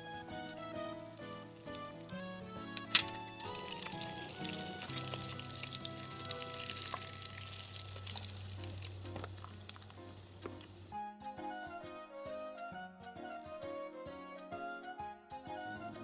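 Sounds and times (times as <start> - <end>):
croquettes sizzling in hot oil: 0.0 - 10.9
background music: 0.0 - 16.0.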